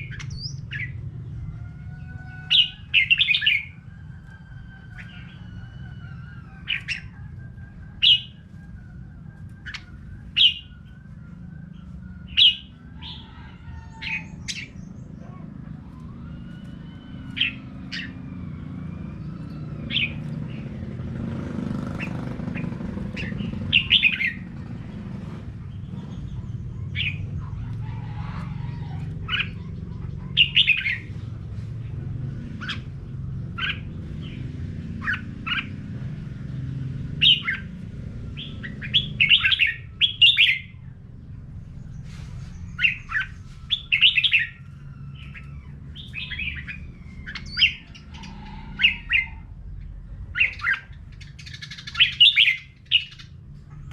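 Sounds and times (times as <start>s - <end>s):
low steady rumble: 22.0s - 53.9s.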